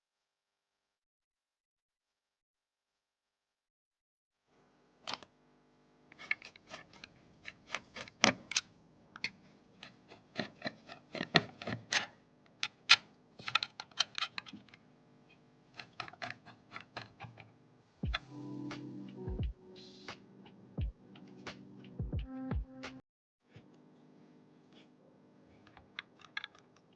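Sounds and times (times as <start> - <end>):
plastic and metal parts clicking: 10.4 - 14.8, 15.8 - 17.5, 25.7 - 26.9.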